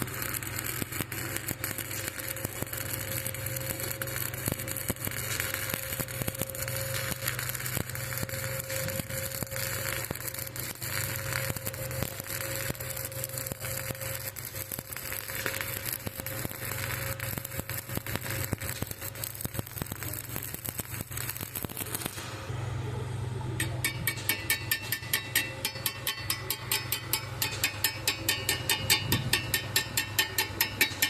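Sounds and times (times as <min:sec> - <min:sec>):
welding arc crackling: 0:00.0 - 0:22.6, 0:23.5 - 0:31.0.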